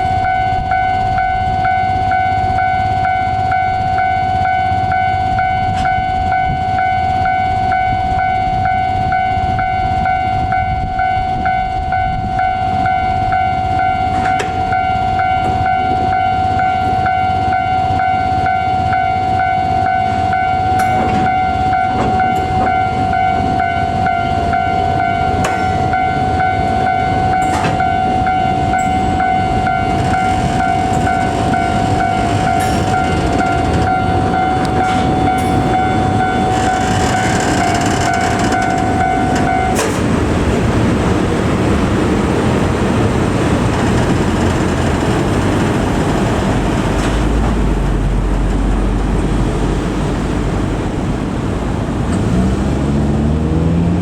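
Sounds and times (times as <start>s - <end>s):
level crossing bell ringing: 0.0s - 39.8s
train wheels rolling on rails: 0.0s - 54.0s.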